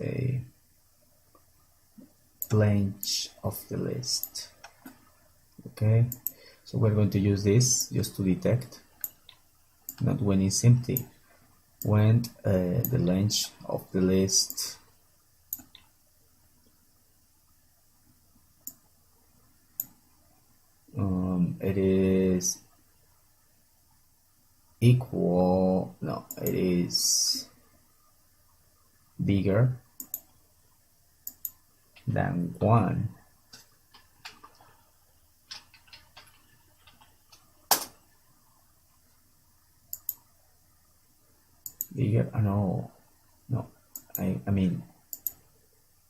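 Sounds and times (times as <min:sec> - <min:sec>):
faint background hiss: 0:00.0 - 0:46.0
computer mouse clicks: 0:04.2 - 0:05.1, 0:06.1 - 0:06.4, 0:09.0 - 0:10.1, 0:15.5 - 0:15.9, 0:19.8 - 0:20.0, 0:26.3 - 0:26.6, 0:30.0 - 0:30.4, 0:31.2 - 0:32.1, 0:35.5 - 0:37.9, 0:39.9 - 0:40.2, 0:41.6 - 0:42.0, 0:43.9 - 0:44.3, 0:45.1 - 0:45.4
keyboard clicks: 0:30.0 - 0:30.3, 0:35.5 - 0:37.9, 0:39.9 - 0:40.2, 0:41.6 - 0:41.9, 0:45.1 - 0:45.4.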